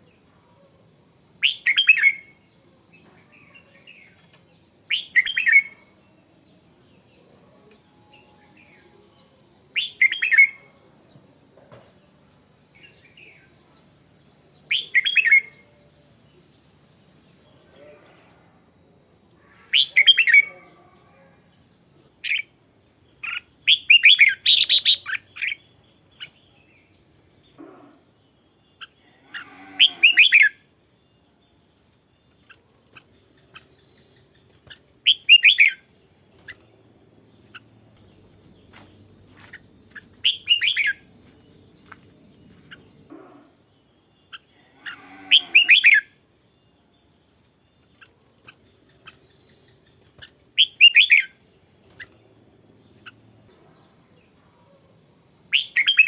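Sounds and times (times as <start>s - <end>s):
bulbul singing: 14.6s - 15.7s, 21.8s - 27.6s, 32.2s - 43.1s, 47.8s - 53.5s.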